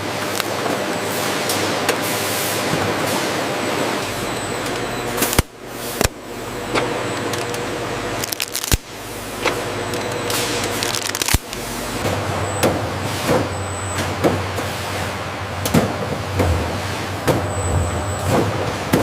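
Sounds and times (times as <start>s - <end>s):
production line machinery din: 0.0s - 19.0s.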